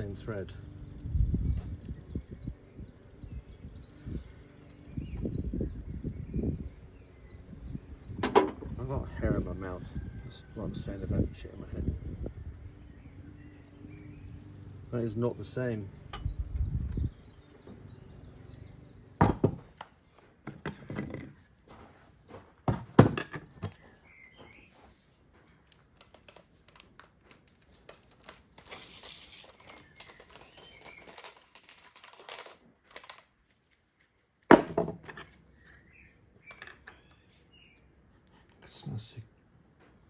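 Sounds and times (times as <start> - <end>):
sharp knocks: 19.2 - 19.7.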